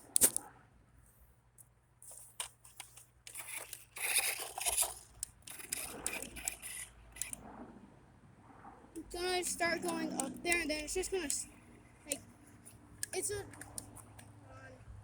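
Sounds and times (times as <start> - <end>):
sharp clicks: 0.0 - 0.4, 9.0 - 12.3, 13.0 - 14.4
rc car tyres scraping a board: 2.0 - 7.8.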